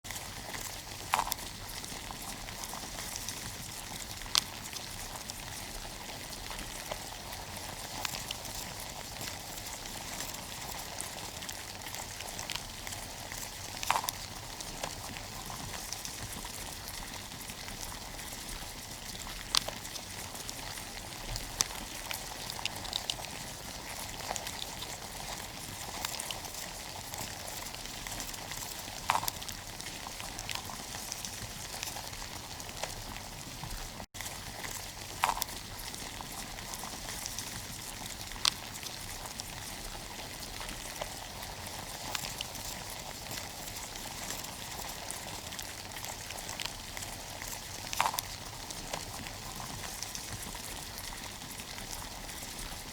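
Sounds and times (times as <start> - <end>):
cockroaches scratching: 6.5 - 32.2, 34.3 - 40.0.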